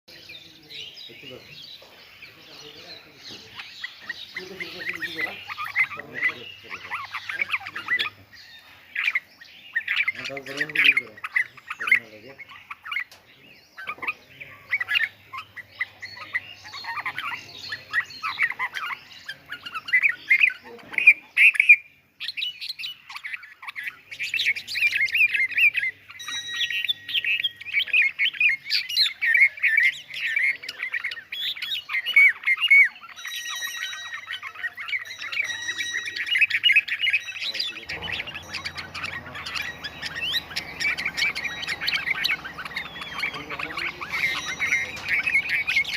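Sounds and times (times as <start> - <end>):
birds squawking and chirping: 0.1 - 45.9
steady low hum: 37.8 - 45.9.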